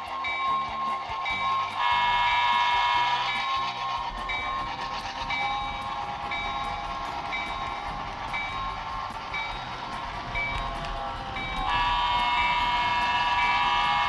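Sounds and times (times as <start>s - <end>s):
model train running: 0.0s - 14.0s.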